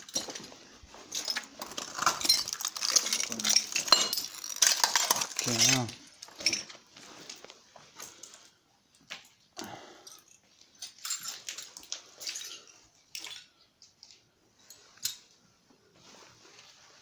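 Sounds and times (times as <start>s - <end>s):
footsteps crunching on broken glass: 0.0s - 7.6s.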